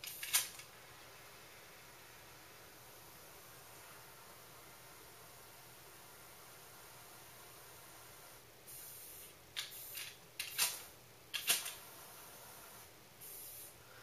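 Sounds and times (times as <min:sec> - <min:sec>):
lighter gas hiss: 0:08.7 - 0:11.7, 0:13.2 - 0:14.0.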